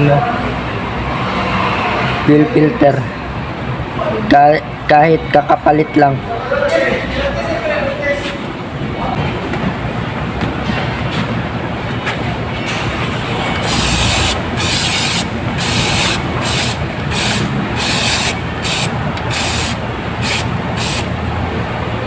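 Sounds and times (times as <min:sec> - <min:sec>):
short hissing spray bursts: 0:13.7 - 0:21.1.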